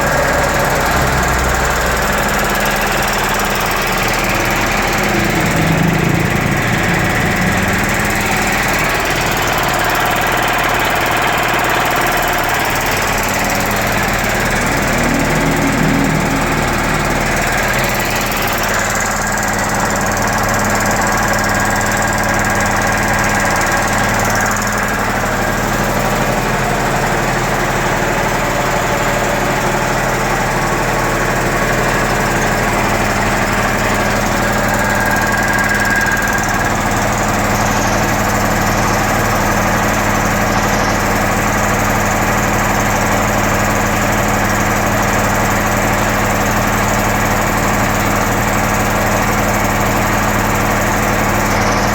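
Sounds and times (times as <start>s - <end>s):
air compressor running: 0.0s - 22.5s.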